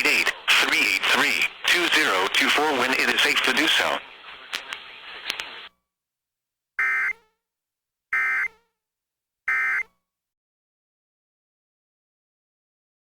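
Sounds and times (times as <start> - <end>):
buzzing two-tone digital data bursts: 6.8 - 7.4, 8.2 - 8.7, 9.5 - 9.9.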